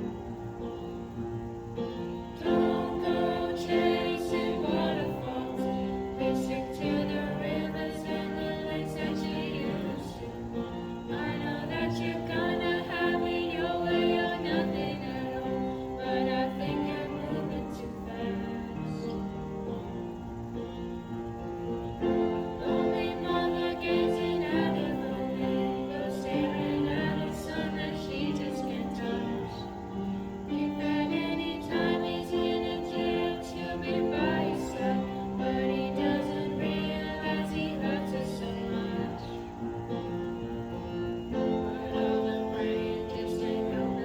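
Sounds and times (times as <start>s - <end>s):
singing over sustained chords: 0.0s - 44.0s.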